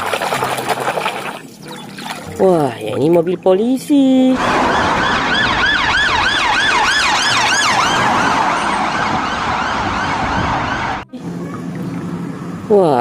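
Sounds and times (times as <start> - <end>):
police siren yelping: 4.4 - 11.1.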